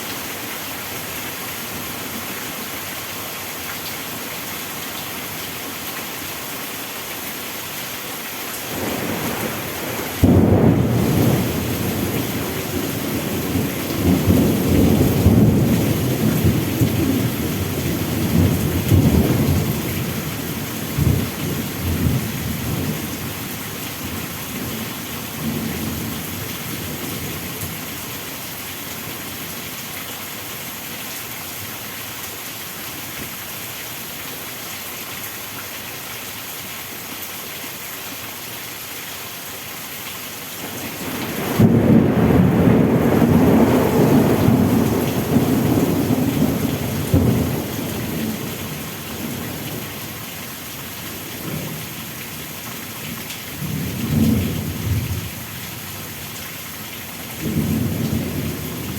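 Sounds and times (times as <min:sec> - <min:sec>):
heavy rain: 0:00.0 - 0:58.9
thunder rumbling: 0:08.7 - 0:23.0, 0:40.9 - 0:49.8.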